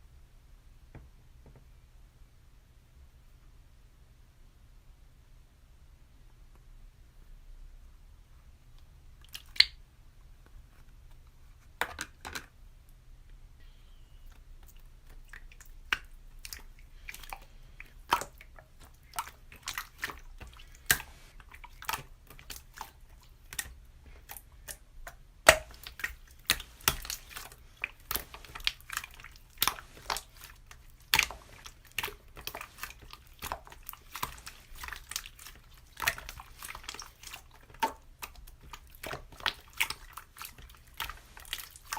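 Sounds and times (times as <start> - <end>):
slime squelching with wet pops: 9.2 - 9.8, 14.3 - 41.9.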